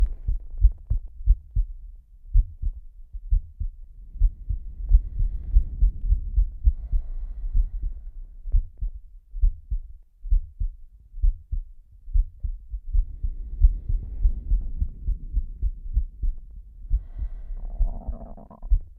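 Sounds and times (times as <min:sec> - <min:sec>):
heartbeat thumps: 0:00.0 - 0:18.9
soft heavy breathing: 0:04.2 - 0:08.9, 0:13.0 - 0:18.9.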